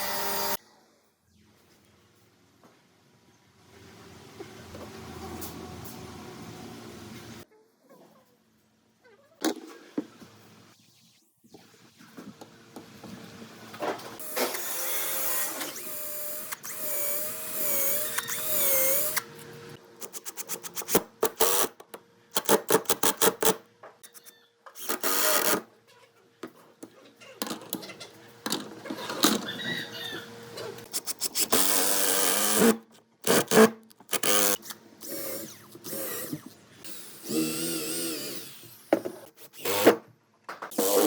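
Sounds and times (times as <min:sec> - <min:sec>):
small power tool running: 0:00.0 - 0:00.6, 0:31.3 - 0:39.9, 0:40.7 - 0:41.0.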